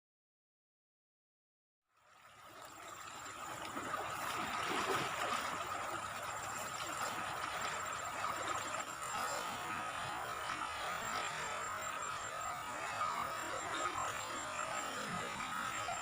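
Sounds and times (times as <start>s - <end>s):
river current rushing: 2.7s - 16.0s
steady high tone: 5.0s - 16.0s.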